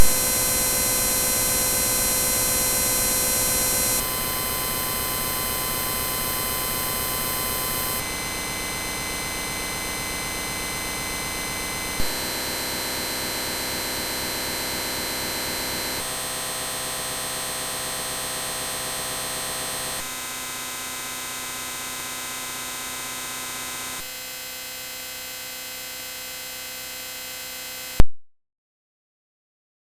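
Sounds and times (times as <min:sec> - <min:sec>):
sped-up buzzing drone: 0:00.0 - 0:08.0.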